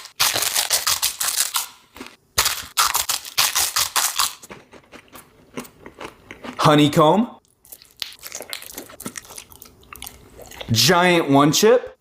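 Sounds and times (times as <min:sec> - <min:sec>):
tortilla chip crunching: 0:00.0 - 0:06.6.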